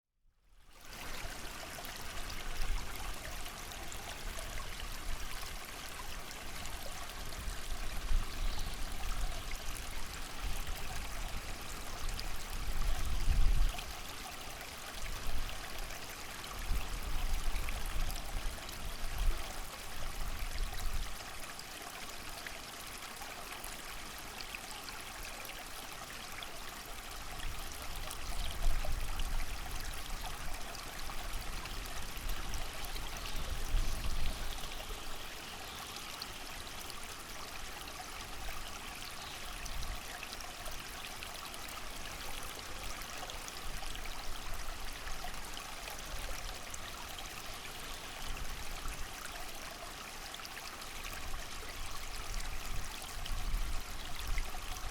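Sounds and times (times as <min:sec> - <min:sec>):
creek water running over stones: 0:00.6 - 0:54.9
rain: 0:25.2 - 0:54.9.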